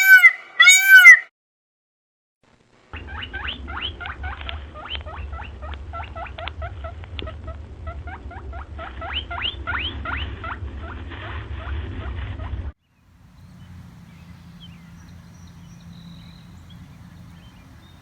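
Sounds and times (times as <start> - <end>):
animal squeaking: 0.0 - 1.2
low hum: 13.0 - 18.0.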